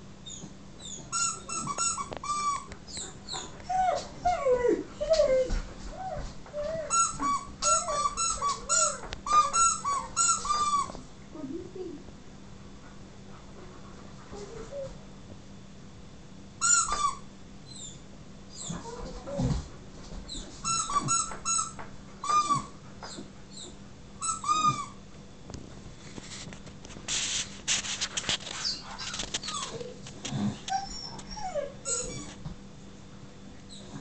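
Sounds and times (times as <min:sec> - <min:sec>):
dogs whining and yipping: 0:00.2 - 0:11.0, 0:16.6 - 0:19.6, 0:20.3 - 0:25.0, 0:28.5 - 0:32.5
squeaky toy squeaking: 0:00.8 - 0:02.7, 0:06.9 - 0:10.9, 0:16.6 - 0:17.2, 0:20.6 - 0:22.7, 0:24.2 - 0:25.0, 0:30.7 - 0:32.3.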